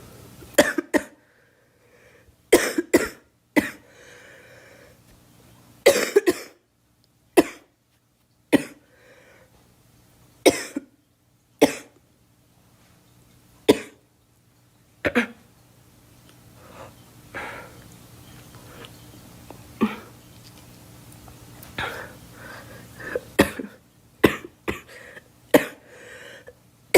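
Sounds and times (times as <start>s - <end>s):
girl coughing: 0.6s - 1.2s, 2.5s - 3.8s, 5.9s - 6.6s, 10.5s - 10.9s, 13.7s - 14.0s, 15.1s - 15.4s, 19.8s - 20.1s, 23.1s - 25.8s.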